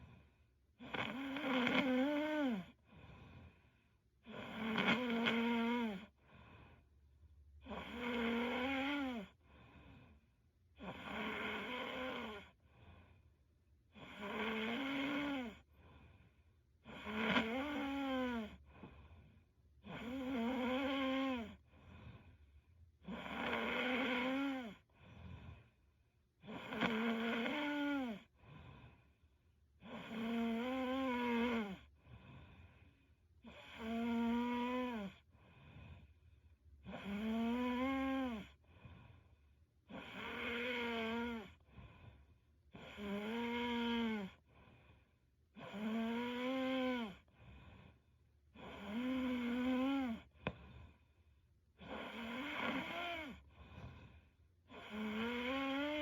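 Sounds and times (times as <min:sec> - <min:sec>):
woman snoring: 0:00.8 - 0:03.5, 0:04.2 - 0:06.2, 0:07.6 - 0:10.1, 0:10.8 - 0:12.6, 0:13.9 - 0:15.7, 0:16.8 - 0:22.2, 0:23.0 - 0:25.7, 0:26.4 - 0:29.0, 0:29.8 - 0:32.8, 0:33.4 - 0:36.1, 0:36.8 - 0:39.1, 0:39.9 - 0:44.8, 0:45.5 - 0:51.0, 0:51.8 - 0:56.0.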